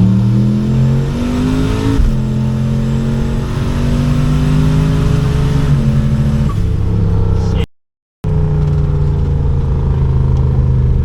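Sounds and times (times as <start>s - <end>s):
car engine running: 5.5s - 11.0s.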